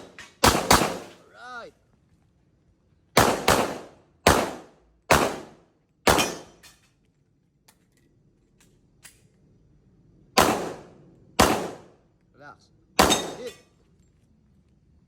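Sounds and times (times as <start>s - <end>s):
pistol shots with echo: 0.0s - 1.1s, 3.2s - 6.6s, 10.4s - 11.9s, 13.0s - 13.6s.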